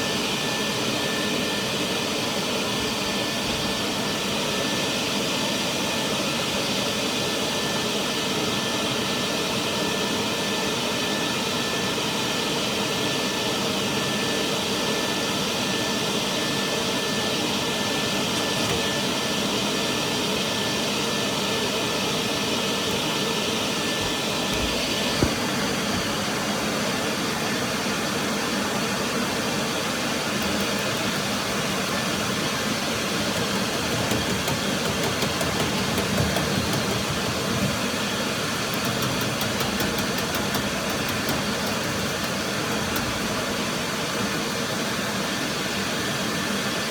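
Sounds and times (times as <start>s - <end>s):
vent cleaning equipment whining: 0.0s - 46.9s
short knock: 24.0s - 26.3s.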